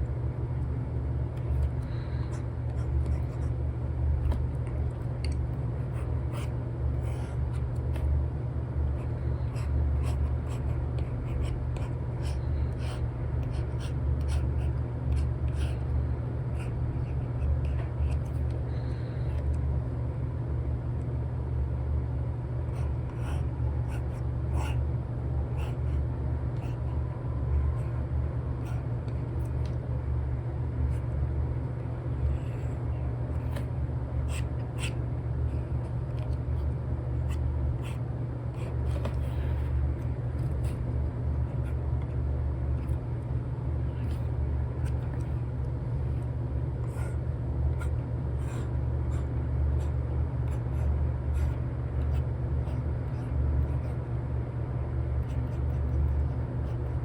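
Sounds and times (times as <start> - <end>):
low background rumble: 0.0 - 57.0
stylus tapping and scratching on tablet: 1.3 - 3.6, 22.8 - 24.8, 38.6 - 40.8, 47.8 - 54.0.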